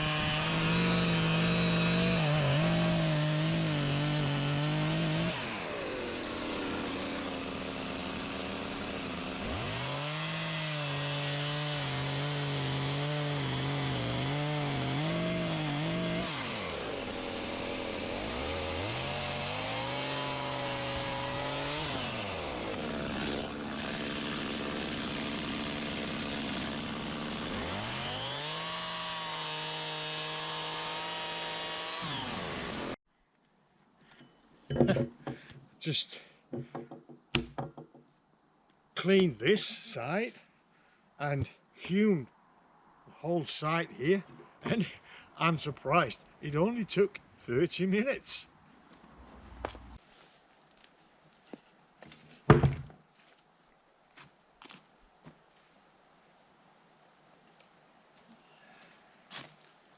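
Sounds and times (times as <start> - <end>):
chainsaw revving: 0.0 - 33.0.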